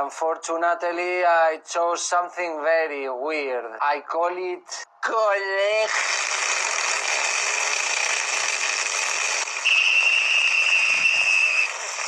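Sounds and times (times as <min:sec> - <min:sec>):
person making harsh throaty sound: 0:05.8 - 0:08.5.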